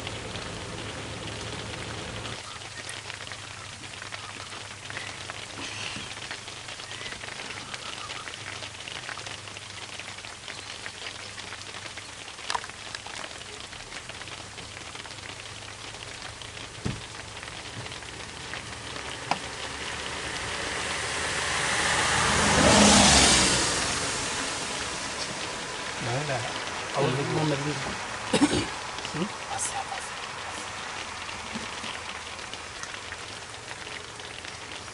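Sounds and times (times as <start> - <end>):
rain-like hiss: 0.0 - 34.9
vehicle passing by: 17.6 - 31.4.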